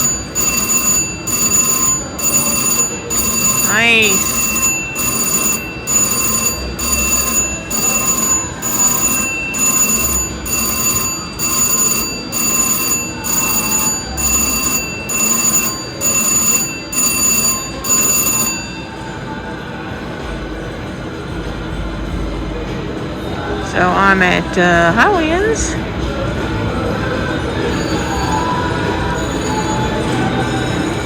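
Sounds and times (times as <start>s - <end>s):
slot machine bell ringing: 0.0s - 19.4s, 27.2s - 31.0s
casino background noise: 0.0s - 31.0s.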